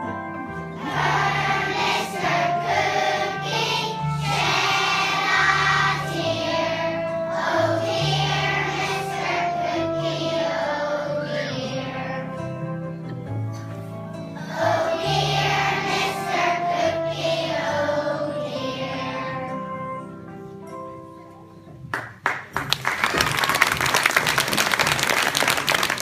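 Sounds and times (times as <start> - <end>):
instrumental accompaniment: 0.0 - 26.0
children's choir singing: 0.6 - 12.6, 14.4 - 20.0.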